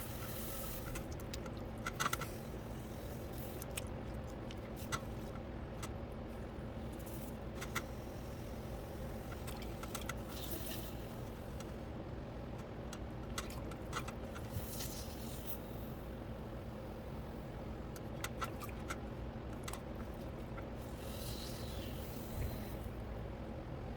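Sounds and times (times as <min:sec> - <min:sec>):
pottery wheel humming: 0:19.4 - 0:23.9.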